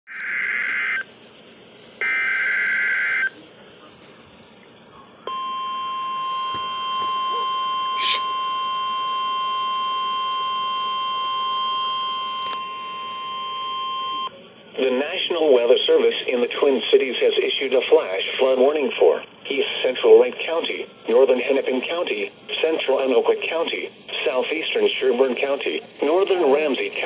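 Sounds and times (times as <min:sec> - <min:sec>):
steady warning alarm tone: 0:05.3 - 0:14.3
radio hiss: 0:06.2 - 0:06.7, 0:14.6 - 0:27.0
warbling digital header tones: 0:08.0 - 0:08.4.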